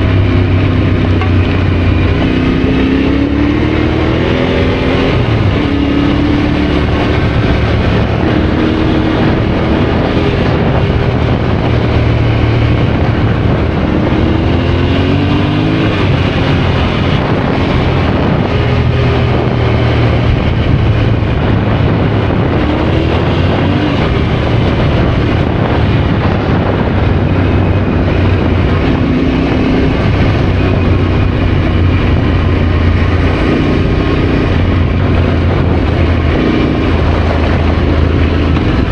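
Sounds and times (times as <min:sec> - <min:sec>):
motorcycle engine revving: 0:00.0 - 0:38.9
wind and road noise: 0:00.0 - 0:38.9.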